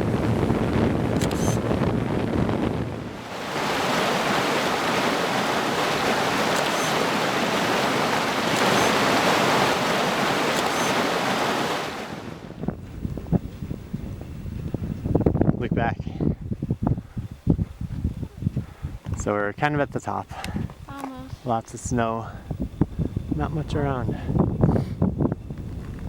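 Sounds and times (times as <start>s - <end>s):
running water rushing: 3.0s - 12.5s.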